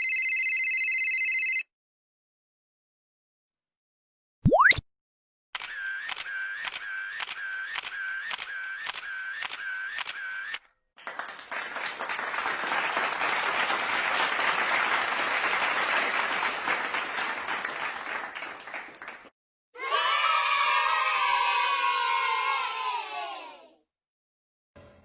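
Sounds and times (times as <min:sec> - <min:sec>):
applause: 0:11.0 - 0:19.4.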